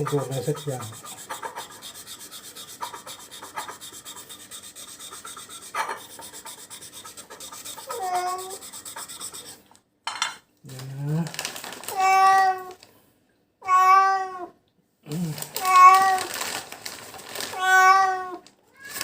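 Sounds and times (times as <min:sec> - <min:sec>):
rubbing and scraping: 0:00.0 - 0:09.7
cat meowing in pain: 0:07.8 - 0:08.6, 0:11.9 - 0:12.8, 0:13.6 - 0:14.5, 0:15.3 - 0:16.4, 0:17.5 - 0:19.0.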